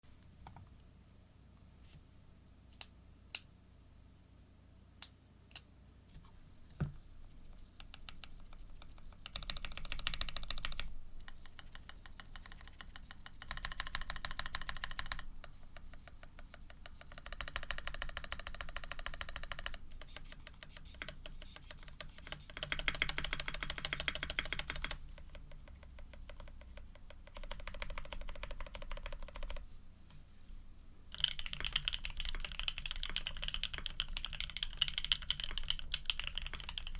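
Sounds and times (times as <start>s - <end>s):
mechanical keyboard typing: 7.8s - 15.3s, 16.6s - 29.6s, 31.1s - 36.9s.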